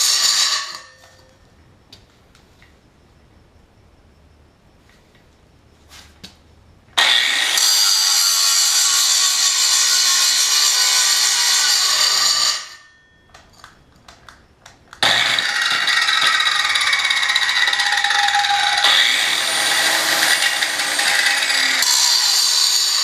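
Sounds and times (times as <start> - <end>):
angle grinder grinding metal: 0.0 - 1.2, 7.0 - 12.9, 15.0 - 23.0.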